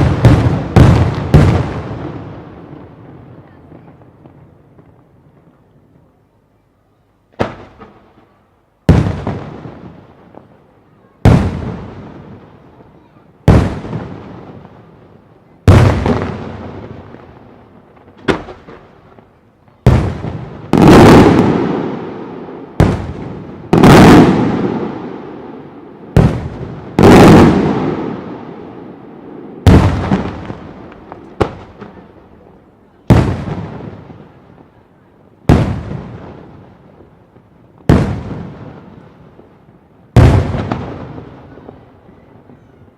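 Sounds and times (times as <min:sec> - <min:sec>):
firework shells booming: 0:00.0 - 0:02.9, 0:07.3 - 0:10.5, 0:13.4 - 0:14.7, 0:15.6 - 0:17.3, 0:17.9 - 0:19.0, 0:19.8 - 0:32.2, 0:33.0 - 0:34.3, 0:35.4 - 0:36.6, 0:40.1 - 0:42.8.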